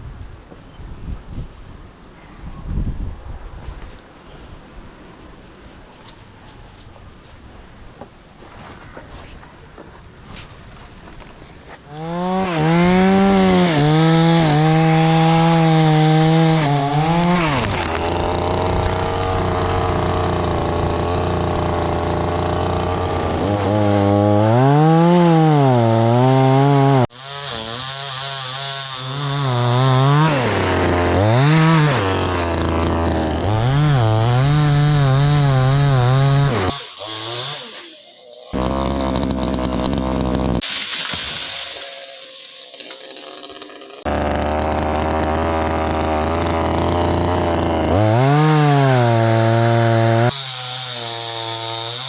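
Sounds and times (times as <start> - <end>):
chainsaw cutting wood: 11.8 - 52.0.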